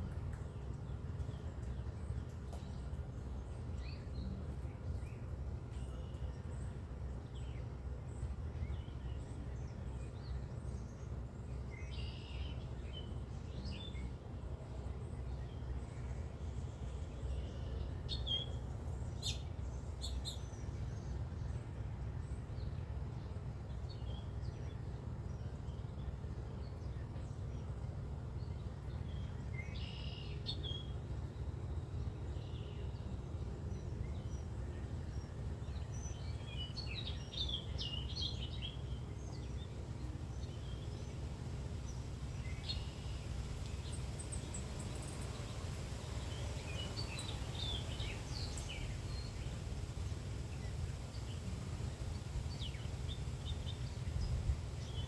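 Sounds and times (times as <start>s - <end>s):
steady low rumble: 30.8s - 55.0s
birds chirping: 41.8s - 55.0s.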